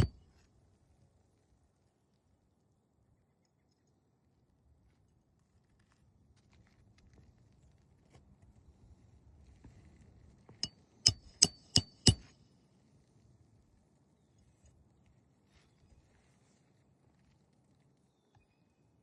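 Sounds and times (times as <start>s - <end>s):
sharp metallic knocks: 0.0s - 0.2s, 11.1s - 12.3s
faint rustling: 13.6s - 18.4s.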